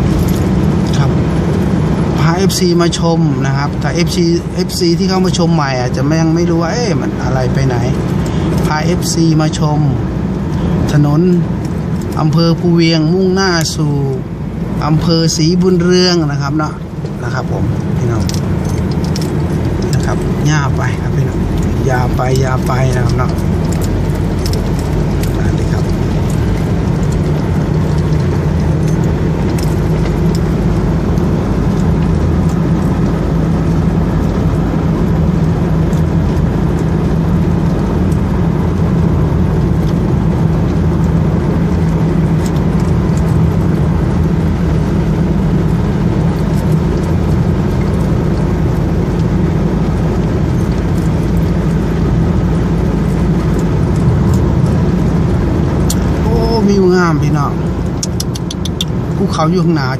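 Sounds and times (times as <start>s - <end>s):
car engine hum: 0.0s - 59.9s
tyre and road noise: 0.0s - 59.9s.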